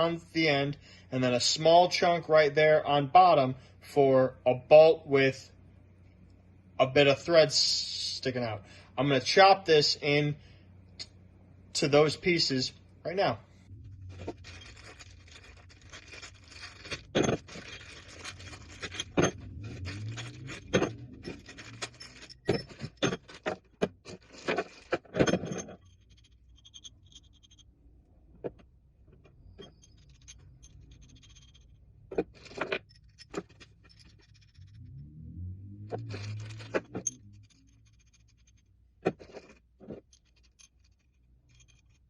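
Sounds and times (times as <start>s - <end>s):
low hum: 1.6s - 42.0s
metal bolts clinking and scraping: 13.9s - 27.7s, 28.4s - 34.8s, 35.9s - 42.0s.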